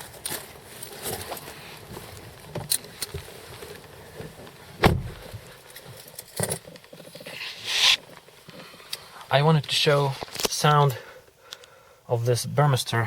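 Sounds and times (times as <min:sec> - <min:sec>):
heavy thump: 0:04.8 - 0:05.4.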